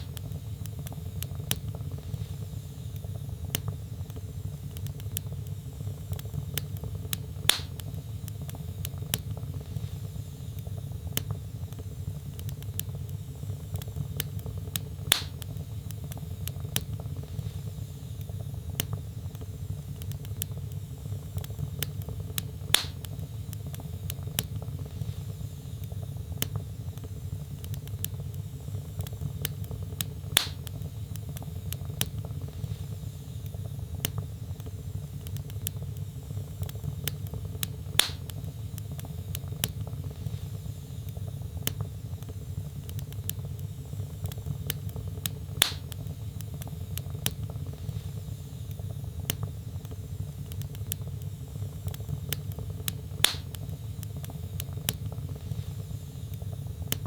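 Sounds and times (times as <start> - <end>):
fire rumbling: 0.0 - 57.0
wood crackling and popping: 0.0 - 57.0.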